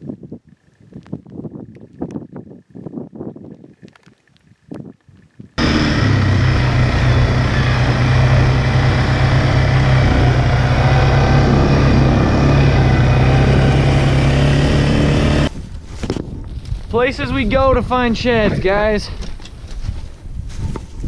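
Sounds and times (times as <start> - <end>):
vehicle engine running: 5.6 - 15.5.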